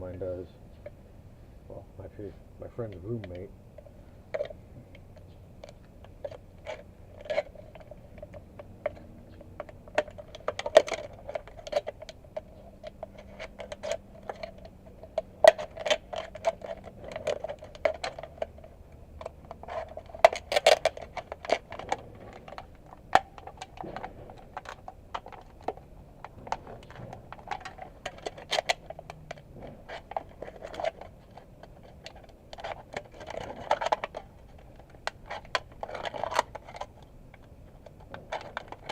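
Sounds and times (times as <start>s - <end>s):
thin sheet metal crinkling: 6.1s - 38.9s.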